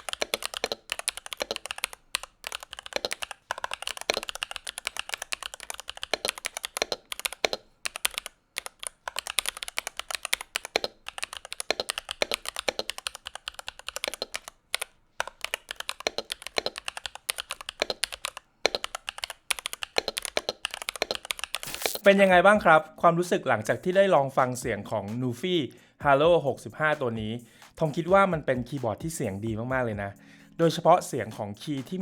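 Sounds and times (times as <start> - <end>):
mechanical keyboard typing: 0.0 - 22.1.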